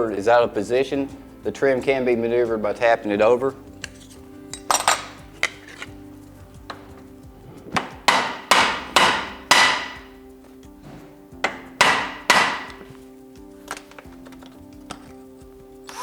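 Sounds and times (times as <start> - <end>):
sharp ringing knocks on trim: 8.0 - 10.1, 11.4 - 12.9.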